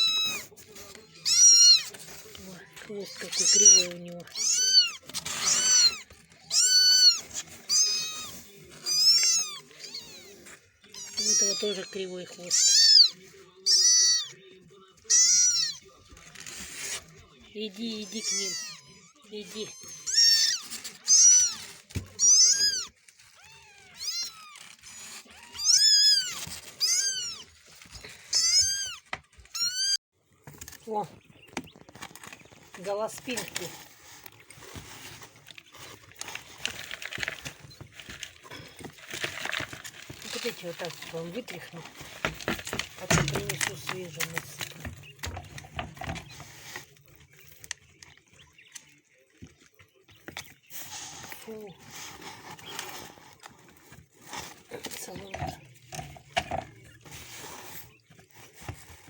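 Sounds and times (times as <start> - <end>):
kittens mewing: 0.0 - 14.4, 15.0 - 15.9, 18.0 - 30.0
litter knocks and rustling: 30.4 - 48.5.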